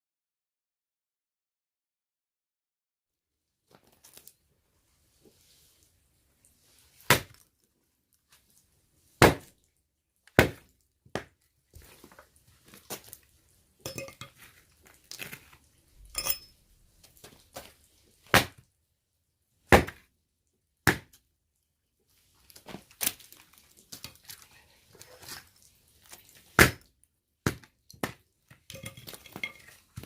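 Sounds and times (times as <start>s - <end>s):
axe chopping firewood: 7.1s - 7.4s, 9.2s - 9.5s, 10.4s - 11.4s, 18.3s - 18.6s, 19.7s - 20.0s, 20.9s - 21.2s, 26.6s - 28.2s.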